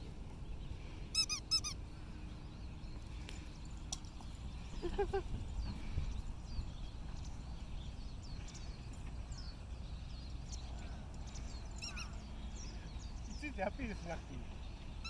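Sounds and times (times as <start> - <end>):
wind rumbling on microphone: 4.5 - 10.3.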